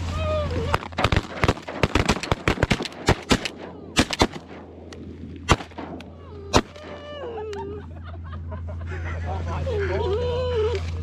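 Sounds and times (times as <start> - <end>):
shotguns firing: 0.7 - 7.1.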